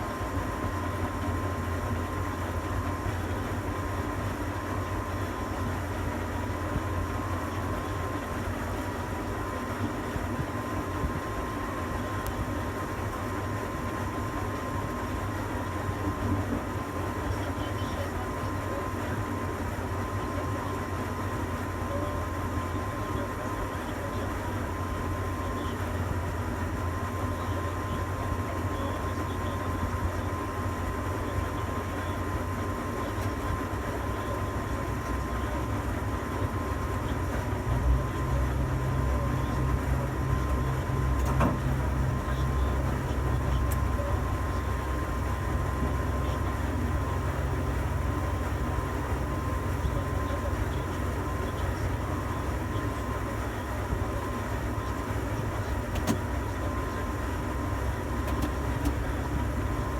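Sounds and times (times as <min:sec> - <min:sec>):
crane machinery hum: 0:00.0 - 0:59.9
thin steady whine: 0:00.0 - 0:59.9.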